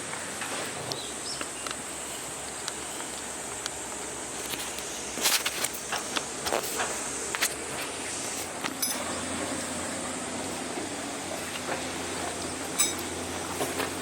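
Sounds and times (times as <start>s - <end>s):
insects singing: 0.0s - 10.7s
camp gear clicks and knocks: 2.4s - 9.0s.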